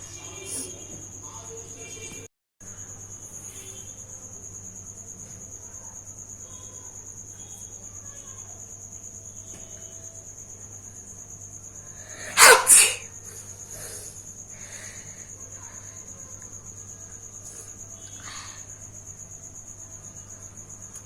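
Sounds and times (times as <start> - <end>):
person blowing nose: 12.3 - 13.0.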